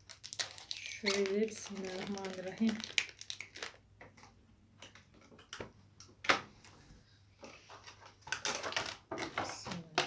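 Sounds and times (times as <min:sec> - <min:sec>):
packaging being unwrapped: 0:00.0 - 0:03.8.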